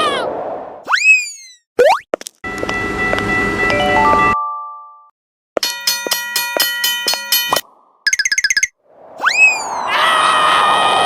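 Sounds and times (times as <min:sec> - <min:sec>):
chime-like electronic tones: 0:02.7 - 0:05.0, 0:08.1 - 0:08.7.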